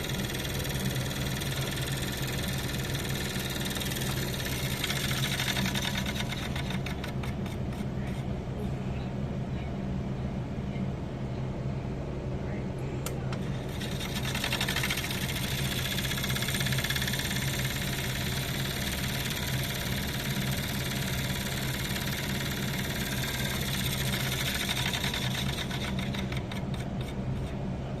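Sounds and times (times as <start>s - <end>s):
rapid ticking rattle: 0.0s - 7.8s, 13.4s - 27.6s
fan humming and hissing: 0.0s - 28.0s.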